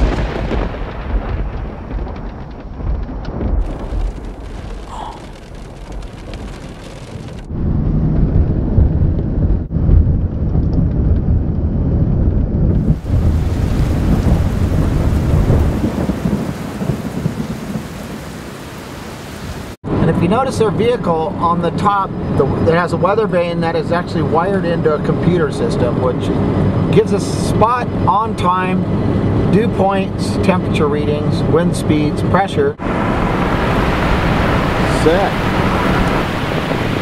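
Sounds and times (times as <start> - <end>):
rain: 0.0 - 19.8, 32.8 - 37.0
thunder rumbling: 0.0 - 30.4, 32.8 - 37.0.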